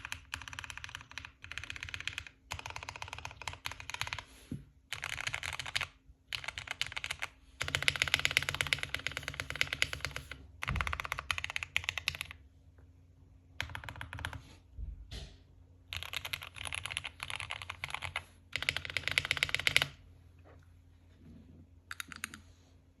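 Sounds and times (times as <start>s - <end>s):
computer keyboard typing: 0.0s - 4.3s, 4.9s - 12.4s, 13.6s - 14.4s, 15.9s - 20.0s, 21.9s - 22.5s.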